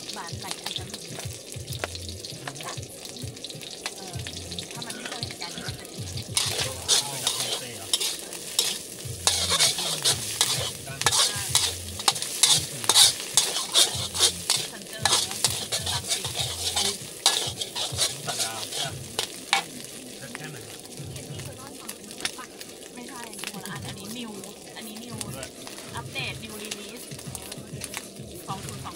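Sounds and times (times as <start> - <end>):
vegetables sizzling in a pan: 0.0 - 28.9
spatula scraping and knocking: 6.1 - 19.7.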